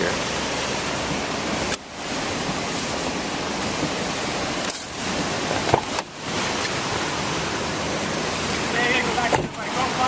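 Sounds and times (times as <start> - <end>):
floodwater rushing across road: 0.0 - 10.0.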